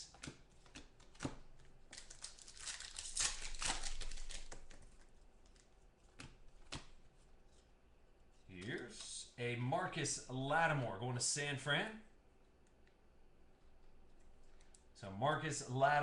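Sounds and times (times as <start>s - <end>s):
cards clicking and snapping: 0.0s - 7.0s
wrapper crinkling and tearing: 1.9s - 4.8s.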